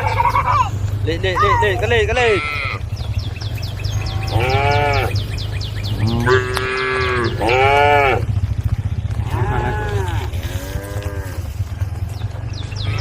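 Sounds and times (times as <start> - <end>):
steady low rumble: 0.0 - 13.0
cattle mooing: 1.4 - 2.9, 3.8 - 5.3, 5.9 - 8.4, 9.1 - 11.8.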